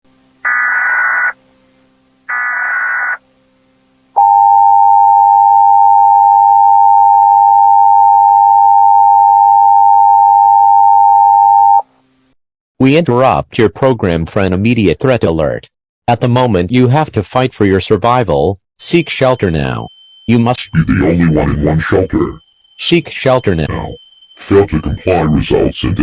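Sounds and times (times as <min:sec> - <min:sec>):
digital data bursts: 0:00.4 - 0:01.4, 0:02.3 - 0:03.2, 0:18.8 - 0:26.0
two-tone attention signal: 0:18.9 - 0:26.0.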